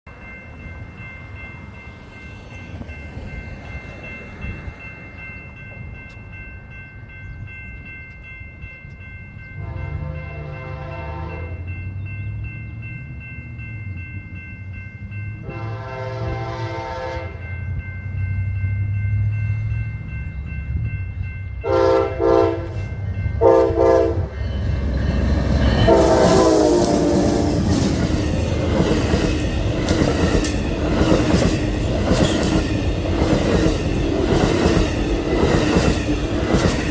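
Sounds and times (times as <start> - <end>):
locomotive rumble: 9.3 - 36.9
locomotive horn blasts: 9.6 - 11.7, 15.4 - 17.4, 21.6 - 24.4, 25.8 - 27.5
train wheel clatter: 23.5 - 36.9.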